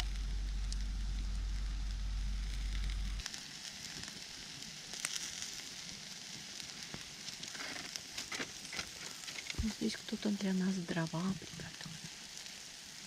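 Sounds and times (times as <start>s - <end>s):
heavy low rumble: 0.0s - 3.3s
campfire crackling and popping: 0.0s - 13.0s.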